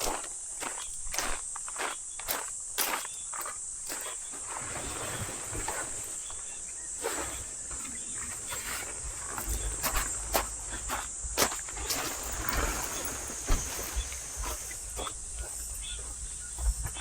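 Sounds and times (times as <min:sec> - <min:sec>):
crickets chirring: 0:00.0 - 0:17.0.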